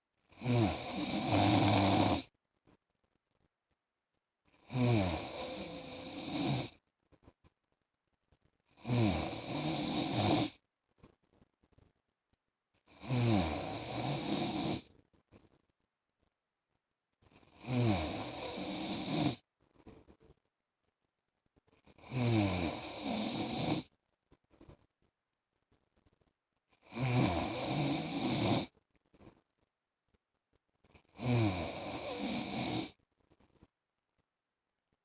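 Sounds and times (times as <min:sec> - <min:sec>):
quiet breaths: 0:00.0 - 0:03.5, 0:04.4 - 0:07.6, 0:08.3 - 0:12.0, 0:12.8 - 0:15.7, 0:17.2 - 0:24.9, 0:25.7 - 0:30.2, 0:30.8 - 0:33.7
man snoring: 0:00.4 - 0:02.3, 0:04.6 - 0:06.7, 0:08.8 - 0:10.6, 0:13.0 - 0:14.8, 0:17.6 - 0:19.4, 0:22.0 - 0:23.9, 0:26.8 - 0:28.7, 0:31.2 - 0:32.9.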